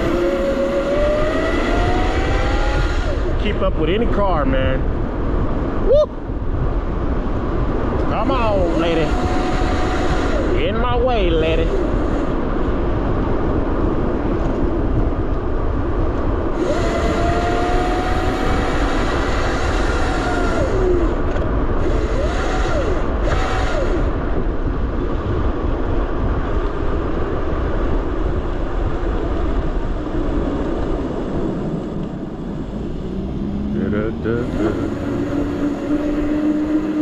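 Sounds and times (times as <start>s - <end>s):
wind rushing over microphone: 0.0s - 37.0s
faint electric motor whine: 16.5s - 24.3s.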